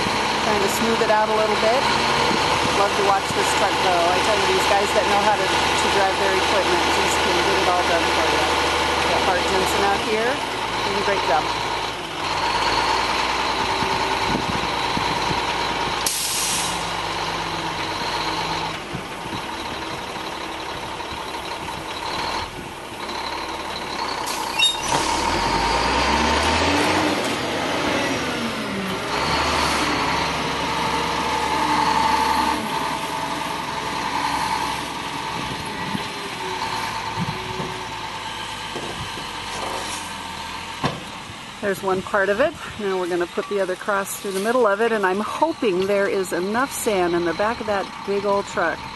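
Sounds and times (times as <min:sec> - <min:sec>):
diesel truck engine: 0:00.0 - 0:48.9
air brakes hissing: 0:16.0 - 0:16.9.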